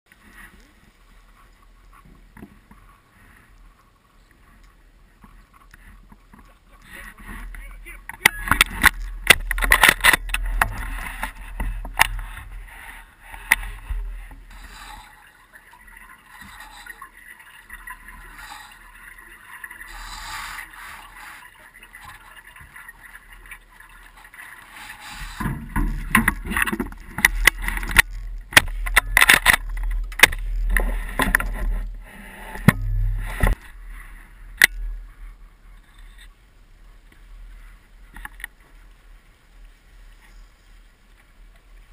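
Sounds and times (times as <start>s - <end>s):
low rumble: 25.2s - 35.6s.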